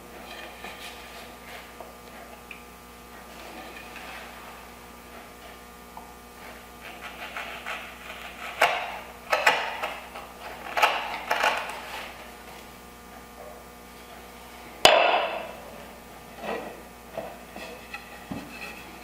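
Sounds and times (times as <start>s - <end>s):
chisel scraping wood: 0.2s - 2.4s, 3.1s - 5.7s, 6.3s - 12.3s, 17.4s - 19.0s.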